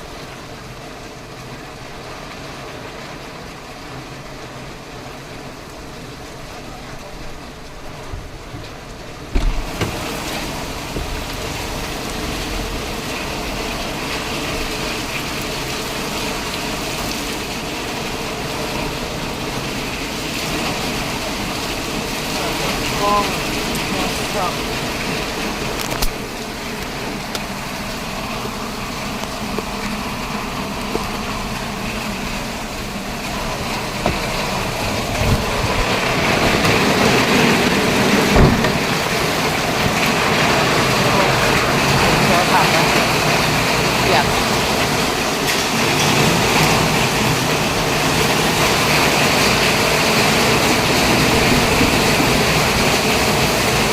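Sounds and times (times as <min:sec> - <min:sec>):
road noise: 0:00.0 - 0:53.9
steady rain: 0:00.0 - 0:53.9
vehicle engine: 0:00.0 - 0:53.9
sharp thumps: 0:09.3 - 0:10.0, 0:38.3 - 0:39.2.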